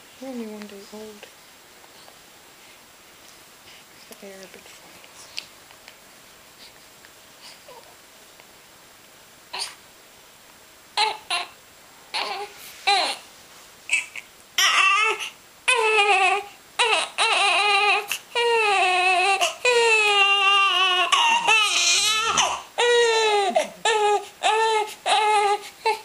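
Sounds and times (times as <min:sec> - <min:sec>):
newborn baby crying: 0:09.5 - 0:09.8, 0:11.0 - 0:13.2, 0:13.9 - 0:26.0.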